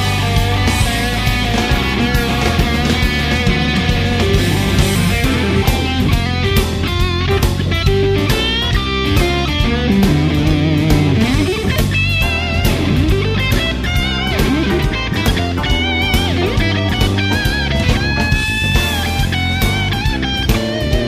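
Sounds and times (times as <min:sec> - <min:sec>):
lead guitar bent notes: 0:00.0 - 0:21.0
rock music: 0:00.0 - 0:21.0.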